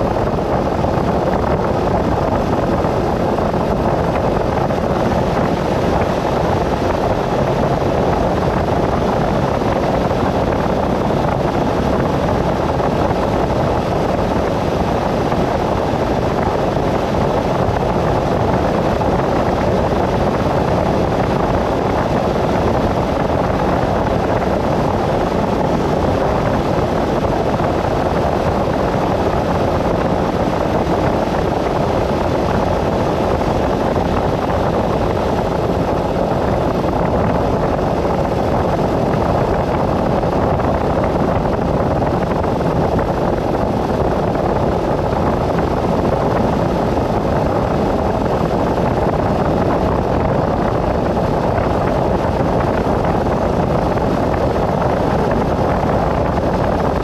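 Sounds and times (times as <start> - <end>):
rushing wind: 0.0 - 57.0
vehicle road noise on highway: 0.0 - 57.0.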